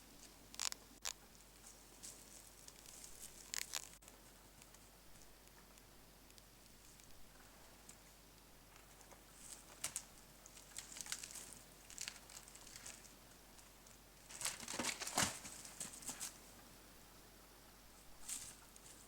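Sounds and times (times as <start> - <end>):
faint rustling and crackling: 0.0 - 16.7, 17.9 - 19.0.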